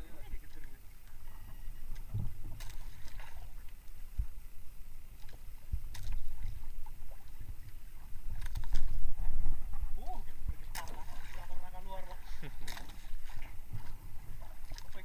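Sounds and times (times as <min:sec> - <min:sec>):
choppy water around boat: 0:00.0 - 0:15.0
strong wind rumble: 0:05.6 - 0:11.3.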